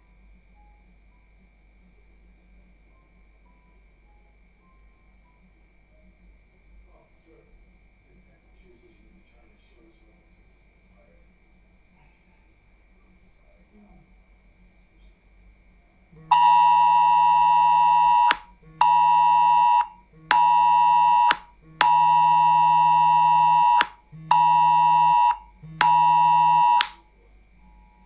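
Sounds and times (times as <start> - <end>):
phone siren-like alarm: 16.2 - 27.0
phone vibration buzz: 16.2 - 27.0.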